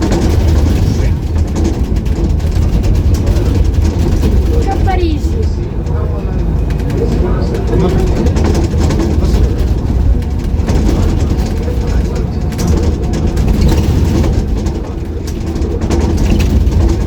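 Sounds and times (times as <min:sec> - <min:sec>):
bus engine rumble: 0:00.0 - 0:17.0
faint voices: 0:00.0 - 0:17.0
street traffic: 0:00.0 - 0:17.0.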